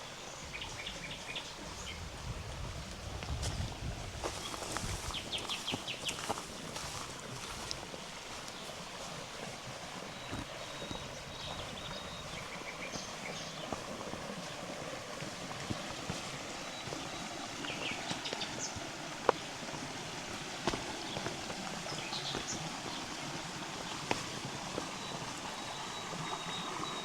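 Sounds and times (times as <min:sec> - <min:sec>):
flowing river water: 0:00.0 - 0:27.0
footfalls on a path: 0:03.3 - 0:08.6, 0:15.2 - 0:25.4
small birds chirping: 0:03.4 - 0:27.0.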